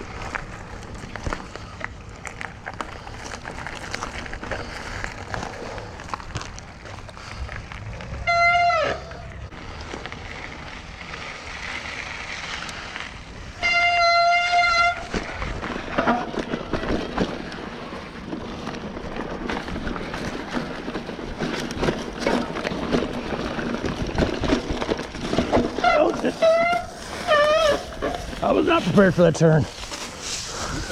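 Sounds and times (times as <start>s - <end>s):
mountain bike rattling on trail: 0.0s - 30.9s
wind: 0.0s - 30.9s
disc brakes squealing: 25.7s - 28.1s.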